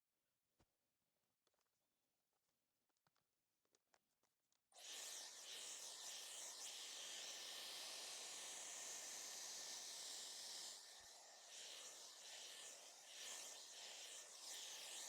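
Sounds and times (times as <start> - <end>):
hair dryer blowing air: 4.8 - 15.0.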